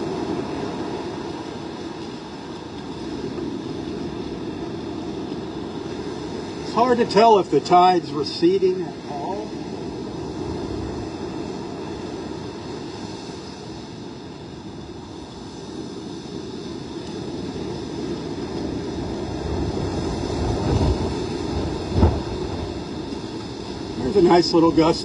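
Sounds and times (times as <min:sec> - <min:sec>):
wind rumbling over microphone: 0:00.0 - 0:25.0
surf breaking: 0:19.0 - 0:25.0.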